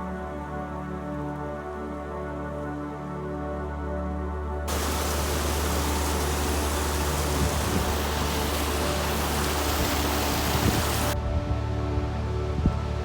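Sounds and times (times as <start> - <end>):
background music with low drone: 0.0 - 13.0
loud rushing noise: 4.7 - 11.2.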